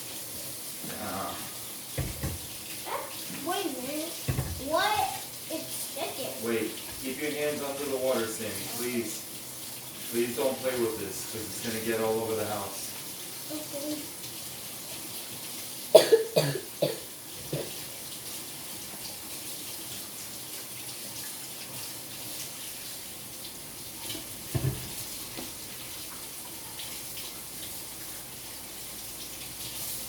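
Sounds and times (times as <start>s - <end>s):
sink tap running: 0.0s - 30.0s.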